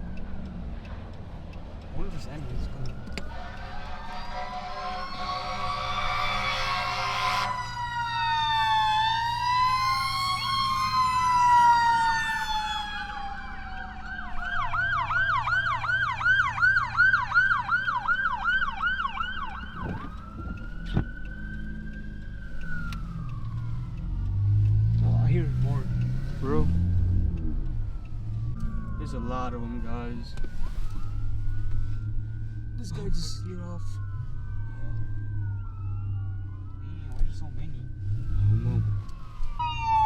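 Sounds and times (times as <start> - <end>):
emergency vehicle sirens wailing: 0.0 - 40.0
siren yelp: 1.9 - 40.0
steady horn blast: 3.1 - 7.9.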